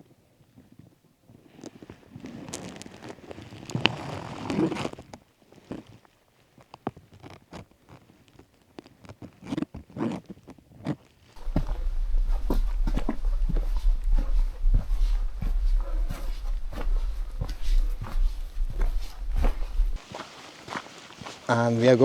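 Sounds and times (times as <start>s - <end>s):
zipper: 2.2s - 5.1s
low rumble: 11.4s - 20.0s
gear rustling: 11.4s - 21.5s.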